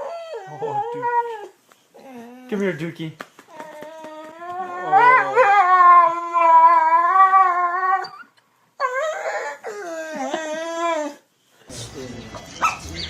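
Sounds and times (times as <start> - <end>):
dog howling: 0.0 - 1.5, 3.6 - 11.2.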